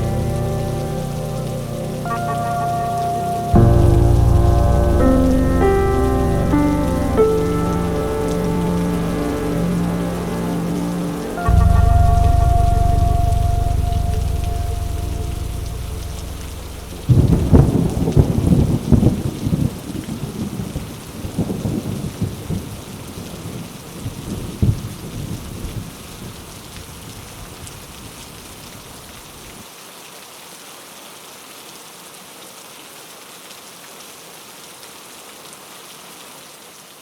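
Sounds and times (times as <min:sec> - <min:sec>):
rolling thunder: 0:00.0 - 0:26.0
steady rain: 0:00.0 - 0:37.0.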